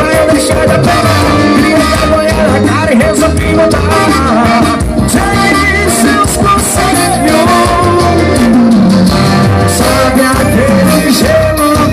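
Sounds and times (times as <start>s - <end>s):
loud band music: 0.0s - 11.9s.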